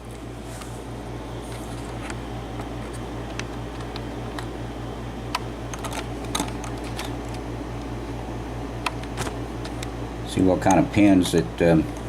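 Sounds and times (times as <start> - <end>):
steady low hum: 0.0 - 12.0
small lock pins clicking: 5.7 - 7.4.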